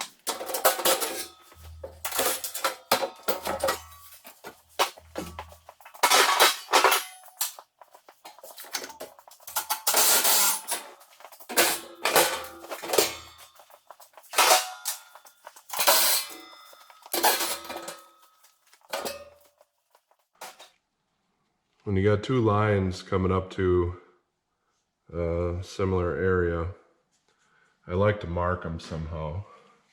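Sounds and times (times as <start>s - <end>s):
metal tools clanking: 0.0s - 19.6s, 20.4s - 20.7s.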